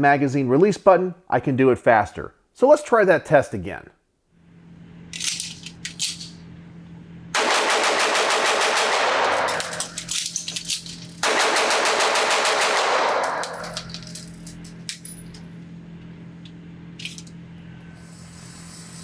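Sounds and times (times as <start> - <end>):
pistol firing rapid shots: 7.4 - 9.6, 11.2 - 13.7
magazine change clicks: 7.4 - 14.8.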